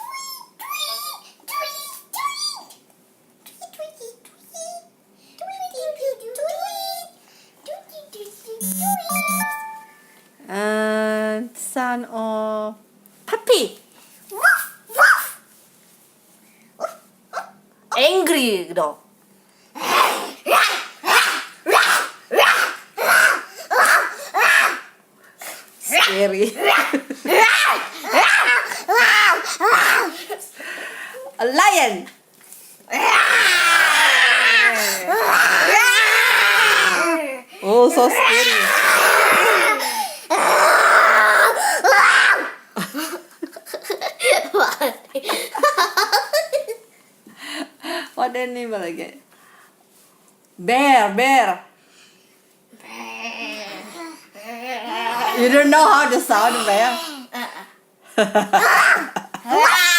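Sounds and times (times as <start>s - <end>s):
child imitating dog barks: 14.4s - 15.4s, 19.8s - 24.9s, 32.9s - 37.4s, 58.6s - 59.9s
child imitating lion roar: 32.9s - 37.5s, 38.1s - 42.6s, 52.8s - 55.5s, 56.3s - 57.7s, 58.6s - 59.9s
child giggling: 42.8s - 46.8s, 56.6s - 59.9s.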